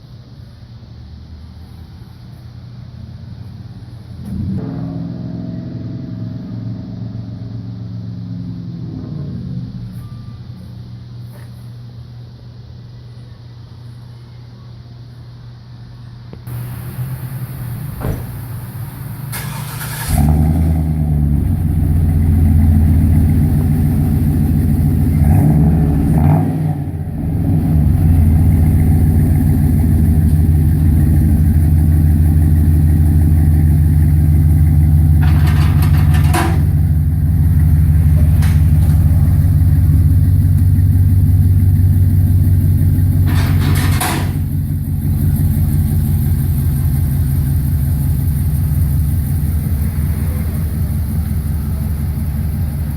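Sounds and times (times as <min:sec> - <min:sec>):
truck engine starting and idling: 0:16.5 - 0:52.9.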